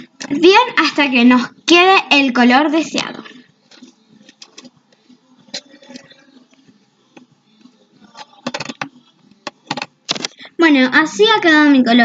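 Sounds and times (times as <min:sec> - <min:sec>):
spoon stirring slime: 0:03.6 - 0:06.7.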